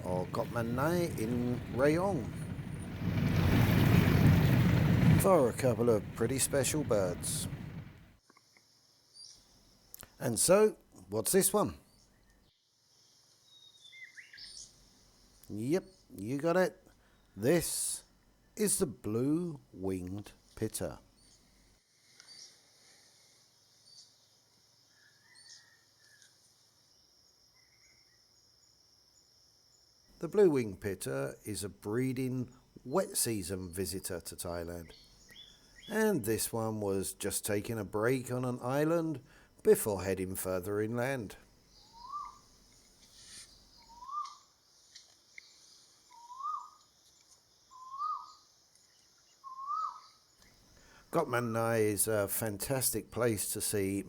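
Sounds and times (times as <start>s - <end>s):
bird whistled call: 25.2s - 25.8s, 41.8s - 42.4s, 43.7s - 44.5s, 46.1s - 46.8s, 47.7s - 48.4s, 49.4s - 50.2s
high bird chirps: 41.7s - 42.4s, 43.3s - 44.5s, 45.4s - 50.4s.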